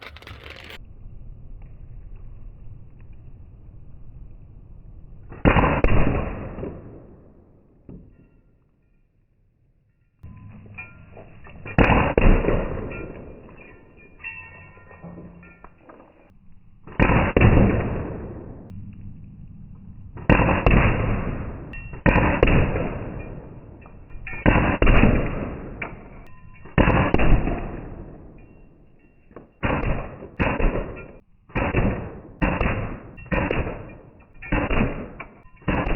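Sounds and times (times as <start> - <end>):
launcher firing rapid pops: 16.9 - 18.7, 20.2 - 23.3, 24.4 - 26.0, 26.8 - 28.0, 29.6 - 35.9.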